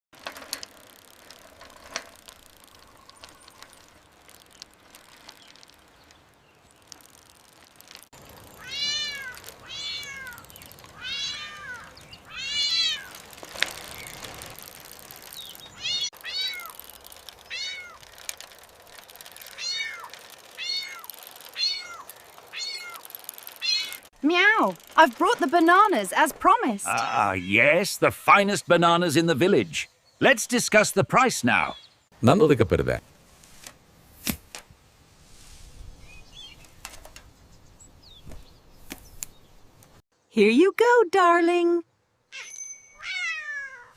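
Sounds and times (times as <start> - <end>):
scattered clicks: 0.2 - 8.6
cat meowing: 8.6 - 10.4, 11.0 - 13.1, 42.4 - 43.9.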